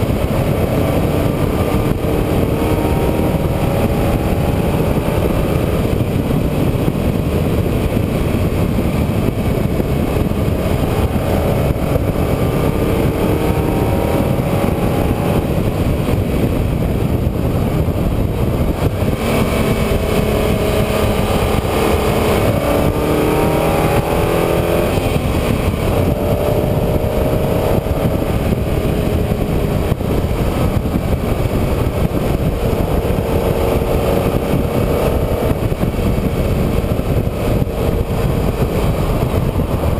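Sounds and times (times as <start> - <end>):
vehicle engine revving: 0.0 - 39.9
wind and road noise: 0.0 - 39.9.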